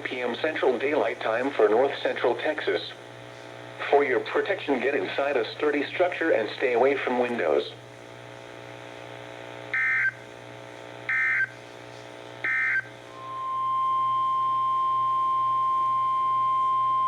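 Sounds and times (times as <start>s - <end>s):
steady warning alarm tone: 9.8s - 10.2s, 11.1s - 11.5s, 12.4s - 17.0s.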